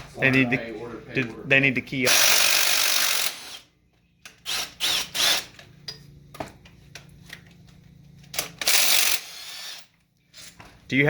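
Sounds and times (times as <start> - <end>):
tool noise bursts: 2.0 - 3.7, 4.3 - 5.6, 8.3 - 10.5.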